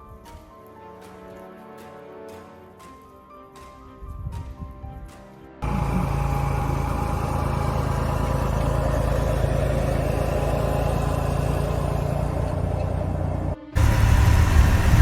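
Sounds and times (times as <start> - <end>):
vehicle engine running: 5.6 - 15.0.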